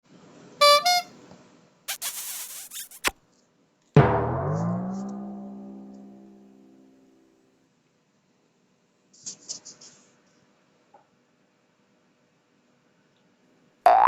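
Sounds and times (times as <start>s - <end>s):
quick pitched notes: 0.6s - 1.1s, 1.9s - 3.1s, 4.0s - 7.0s
timpani-like hit: 4.0s - 7.0s.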